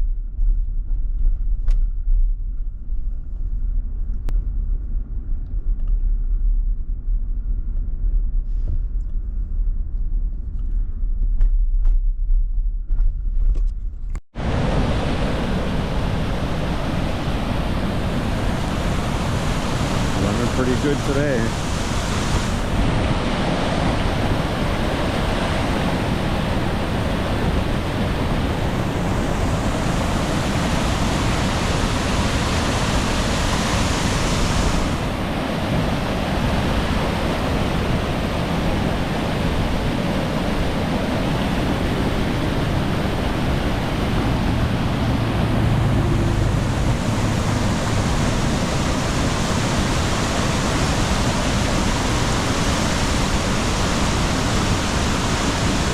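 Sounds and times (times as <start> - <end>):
wind rumbling on microphone: 0.0 - 55.9
waves breaking on shore: 14.4 - 55.9.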